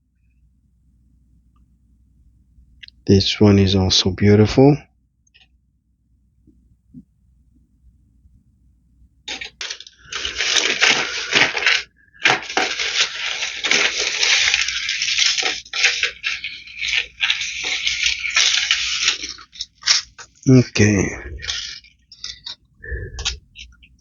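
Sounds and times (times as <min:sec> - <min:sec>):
bag crinkling and rustling: 0:09.3 - 0:24.0.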